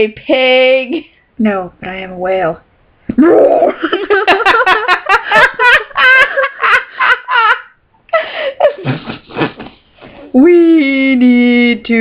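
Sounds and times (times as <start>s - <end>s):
person laughing breathily: 8.1s - 10.3s.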